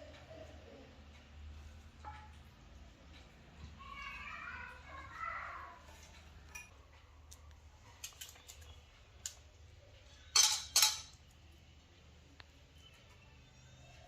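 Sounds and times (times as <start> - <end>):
kitchen utensils and dishes clinking: 5.8 - 6.8, 10.0 - 11.3.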